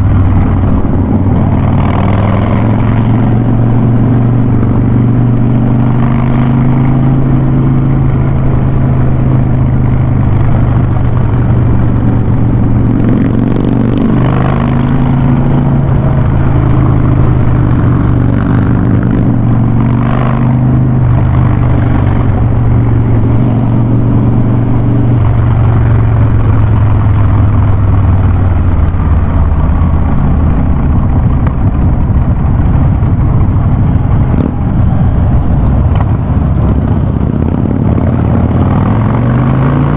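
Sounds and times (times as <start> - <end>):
motorcycle engine deep drone: 0.0 - 39.9.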